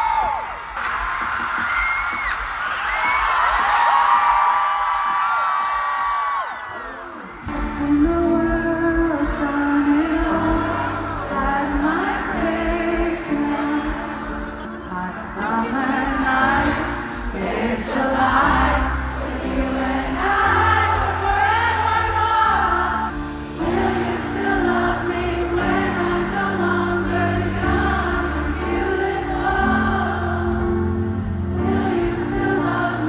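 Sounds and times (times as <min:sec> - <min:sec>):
choir-like singing: 0:09.8 - 0:33.0.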